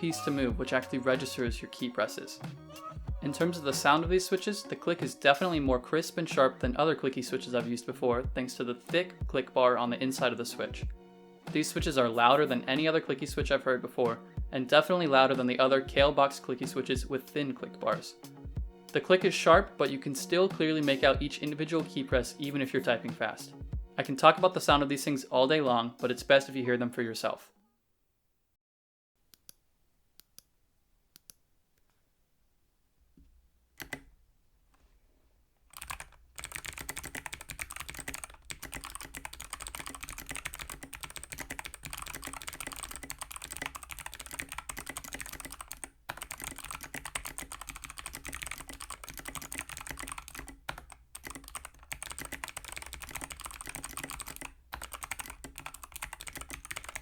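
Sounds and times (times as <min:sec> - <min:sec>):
clicky mechanical keyboard typing: 0:33.8 - 0:34.0, 0:35.8 - 0:57.0.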